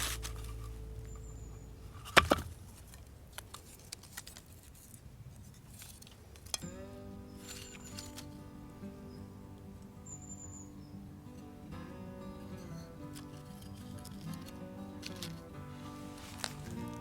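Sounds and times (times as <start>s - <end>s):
music: 0.0s - 2.4s, 6.6s - 17.0s.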